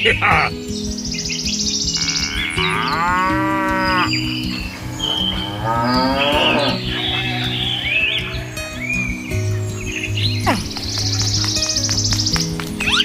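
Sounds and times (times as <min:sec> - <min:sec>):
background music sustained notes: 0:00.0 - 0:13.0
cow mooing: 0:02.0 - 0:08.4.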